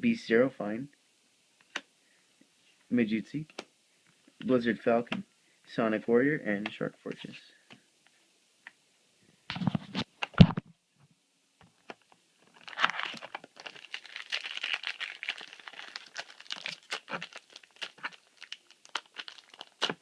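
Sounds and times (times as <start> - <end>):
foil wrapper crinkling and tearing: 12.5 - 20.0.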